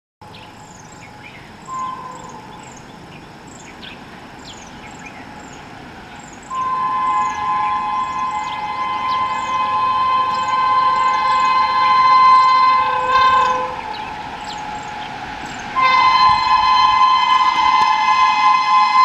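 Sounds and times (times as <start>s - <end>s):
hoarse locomotive horn: 1.7s - 2.8s, 6.5s - 19.0s.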